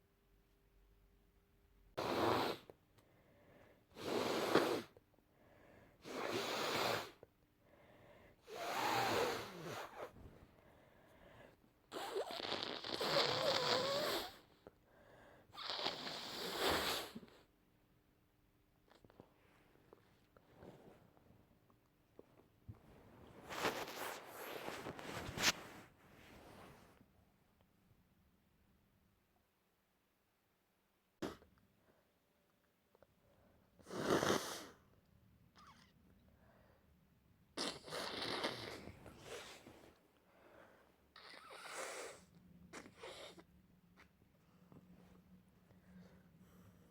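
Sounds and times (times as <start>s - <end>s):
person blowing nose: 2.0s - 2.7s, 3.9s - 5.0s, 6.0s - 7.2s, 8.5s - 10.2s, 11.9s - 14.4s, 15.6s - 17.3s, 33.8s - 34.8s, 37.6s - 39.8s, 41.2s - 43.4s.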